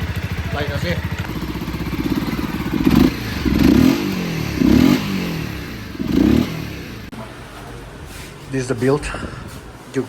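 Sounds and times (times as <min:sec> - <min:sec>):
motorcycle engine revving: 0:00.0 - 0:07.1.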